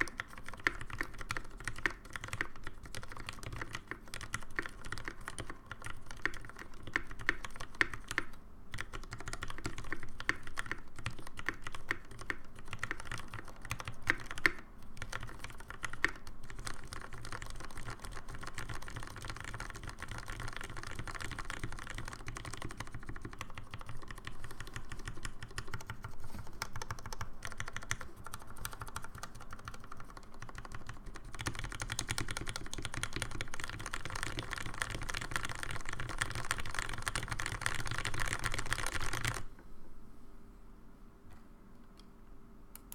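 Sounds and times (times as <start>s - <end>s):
fast typing on mechanical keyboard: 0.0s - 39.5s.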